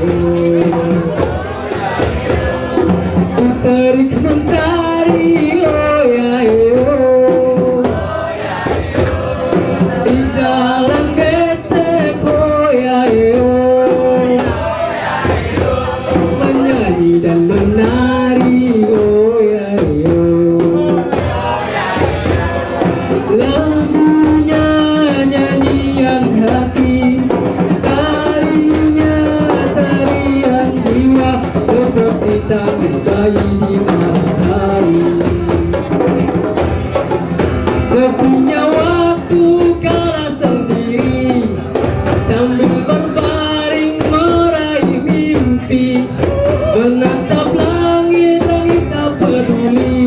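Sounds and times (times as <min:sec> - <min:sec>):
drums and percussion: 0:00.0 - 0:50.0.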